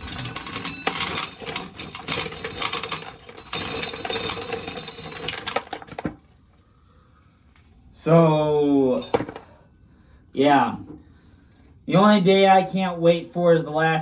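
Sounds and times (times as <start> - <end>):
clinking and rattling: 0.0 - 6.2, 9.0 - 9.5.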